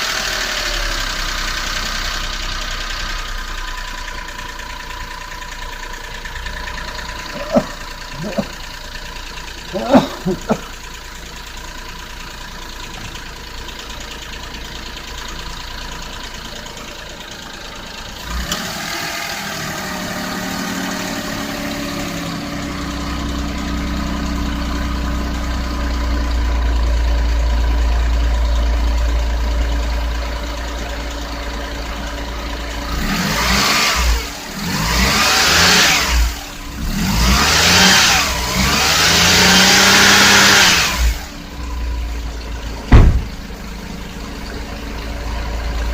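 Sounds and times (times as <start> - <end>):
car engine revving: 6.2 - 10.7, 18.1 - 25.9, 32.1 - 45.9.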